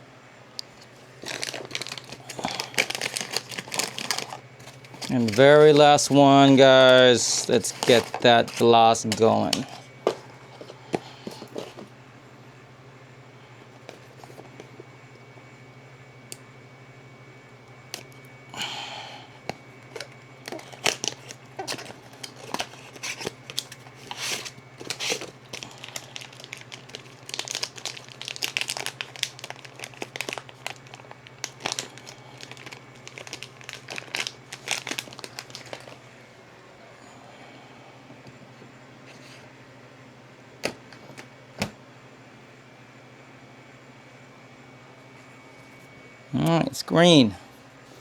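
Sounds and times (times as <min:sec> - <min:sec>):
steady low hum: 0:00.0 - 0:48.0
plastic packaging crinkling: 0:00.6 - 0:11.9, 0:13.6 - 0:14.9, 0:19.4 - 0:36.1.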